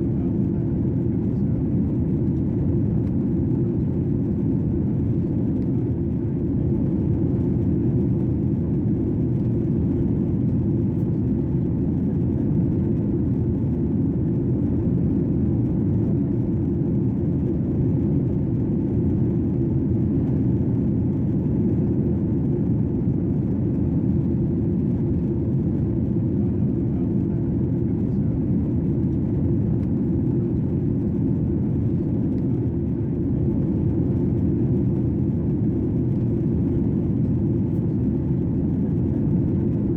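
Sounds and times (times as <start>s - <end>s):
airplane cabin noise: 0.0s - 39.9s.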